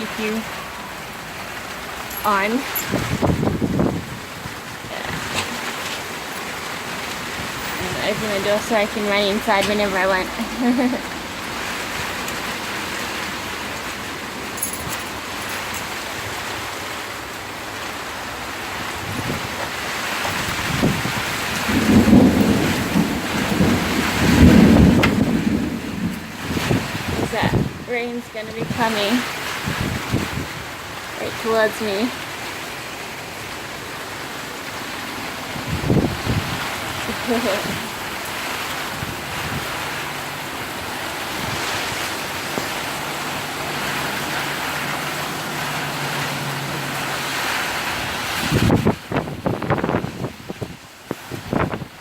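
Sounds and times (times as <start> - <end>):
heavy rain pouring: 0.0 - 52.0
thunder rumbling: 1.9 - 15.4, 18.9 - 27.9, 35.1 - 38.0.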